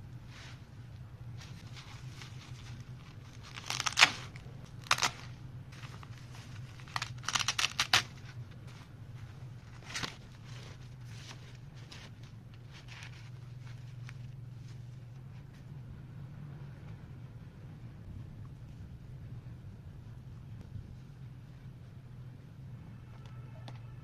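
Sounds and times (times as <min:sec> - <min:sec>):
low steady hum: 0:00.0 - 0:24.0
packaging tearing and crinkling: 0:01.6 - 0:08.3.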